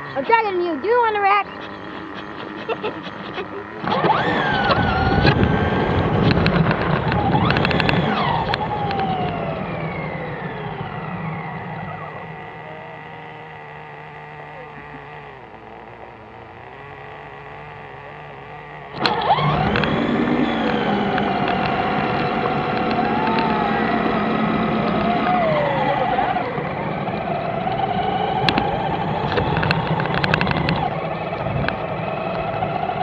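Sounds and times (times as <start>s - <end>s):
radio-controlled car motor whining: 0.0s - 33.0s
quick clicks: 1.3s - 9.6s, 18.8s - 32.6s.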